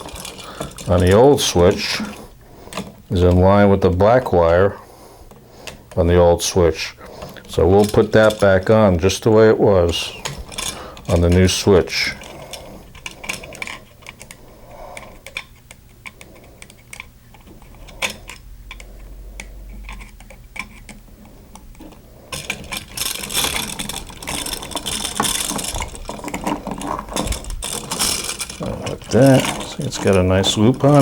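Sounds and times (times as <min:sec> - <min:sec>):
hand tools and wire clicking: 0:00.0 - 0:31.0.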